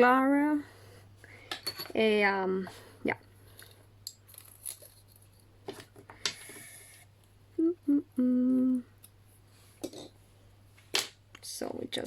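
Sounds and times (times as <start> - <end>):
woman humming: 7.5 - 9.0.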